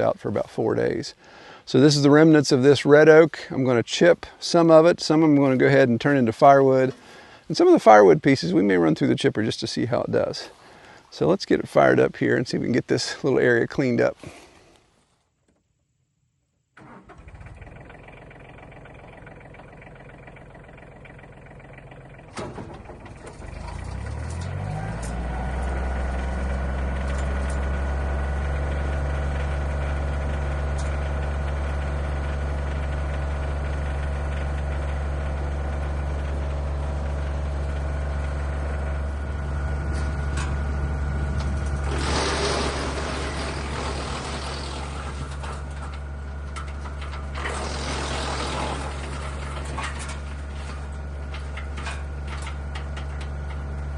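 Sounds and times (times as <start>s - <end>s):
wood chipper engine running: 6.9s - 7.5s, 16.8s - 53.9s
short loud rushing noise: 41.8s - 45.2s.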